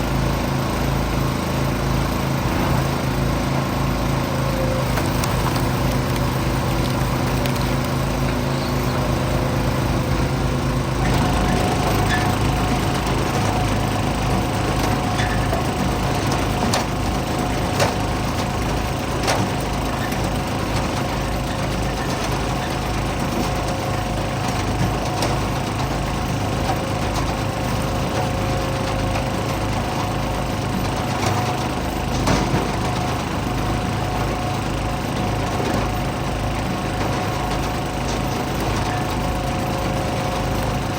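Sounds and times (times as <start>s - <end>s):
small gasoline engine running: 0.0s - 40.9s
wood cracking: 4.8s - 8.5s.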